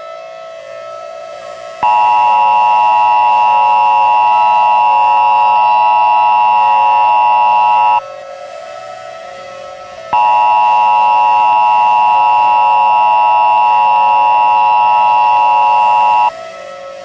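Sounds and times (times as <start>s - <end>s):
electronic dual tone alert: 1.8s - 8.0s, 10.2s - 16.3s
low droning tone: 1.8s - 8.0s, 10.1s - 16.3s.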